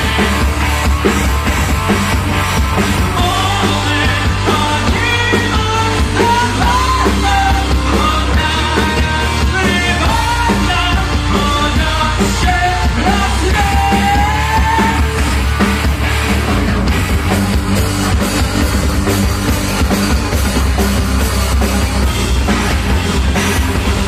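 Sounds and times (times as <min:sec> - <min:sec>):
heavy metal band playing: 0:00.0 - 0:24.0
person singing: 0:03.0 - 0:15.2.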